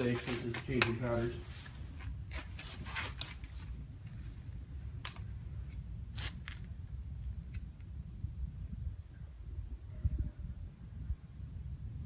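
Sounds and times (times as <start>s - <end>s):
handling clicks and rustles: 0.0s - 7.9s
low steady rumble: 0.0s - 12.0s.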